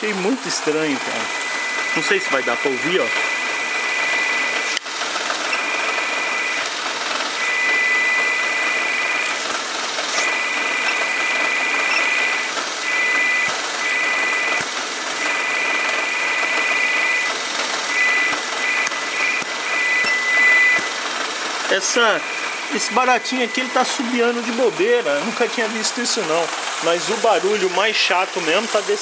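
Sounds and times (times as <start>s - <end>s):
car engine running: 0.0s - 29.0s
high-pitched whistle: 17.9s - 20.9s.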